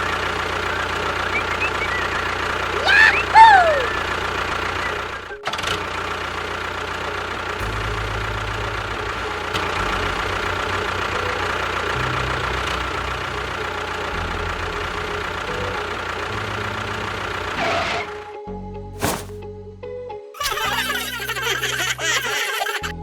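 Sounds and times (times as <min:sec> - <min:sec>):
machine droning: 0:00.0 - 0:17.6.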